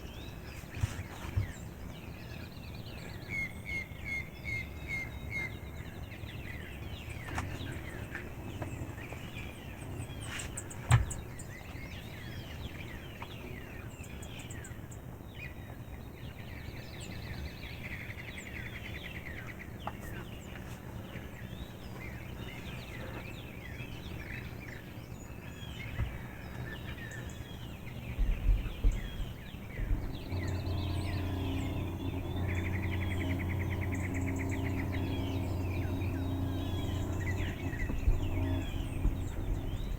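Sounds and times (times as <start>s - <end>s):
low mechanical hum: 0.0s - 39.9s
songbirds chirping and singing: 0.0s - 39.9s
low thumps: 28.2s - 39.9s.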